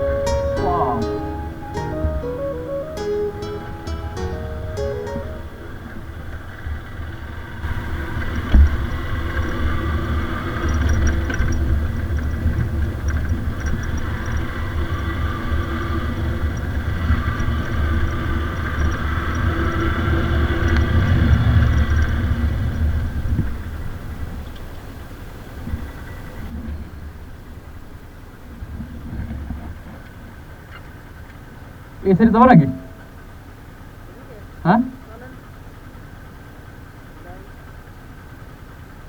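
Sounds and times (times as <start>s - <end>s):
motorcycle engine running: 5.8s - 26.6s.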